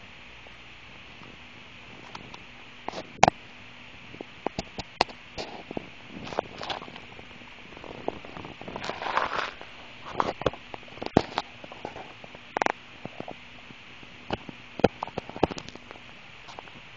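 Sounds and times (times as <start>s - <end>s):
stomach gurgling and popping: 4.2s - 13.4s, 14.2s - 16.9s.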